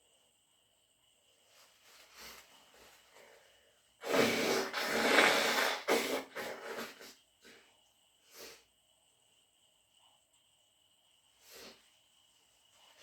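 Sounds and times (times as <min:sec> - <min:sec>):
person sneezing hard: 0:04.0 - 0:07.0.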